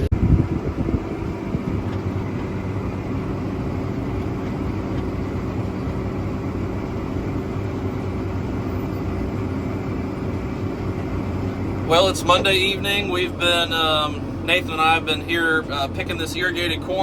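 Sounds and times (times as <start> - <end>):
combine harvester running: 0.0 - 17.0.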